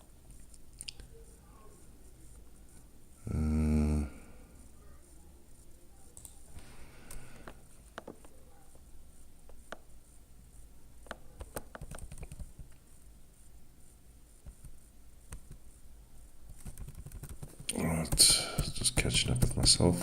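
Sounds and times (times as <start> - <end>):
low room hum: 0.0 - 20.0
faint clicks and taps: 6.1 - 9.9, 11.0 - 12.9, 14.4 - 15.7, 16.4 - 19.8.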